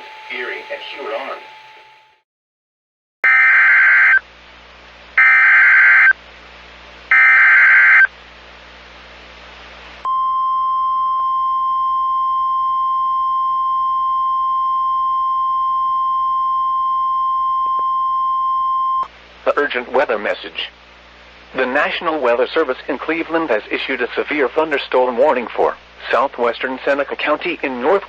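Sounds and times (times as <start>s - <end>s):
steady high alarm tone: 0.0s - 2.2s, 7.1s - 8.1s.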